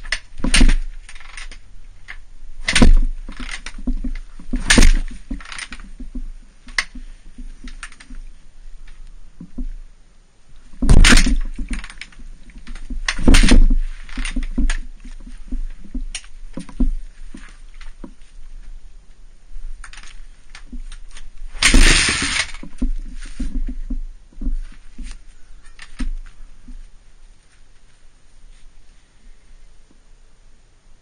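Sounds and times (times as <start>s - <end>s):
motorcycle kick-start bursts: 21.6s - 22.7s.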